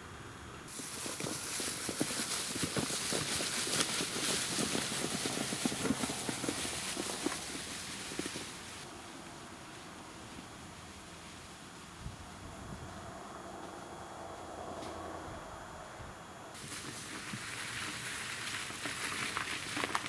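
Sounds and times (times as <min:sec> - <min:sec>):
footsteps crunching: 0:00.7 - 0:08.9, 0:16.6 - 0:20.0.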